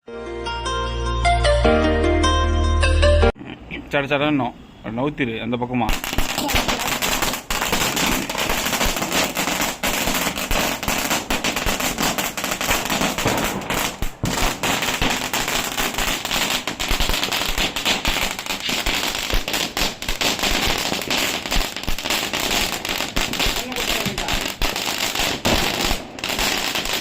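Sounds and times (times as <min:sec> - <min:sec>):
firework crackling: 0:05.9 - 0:27.0.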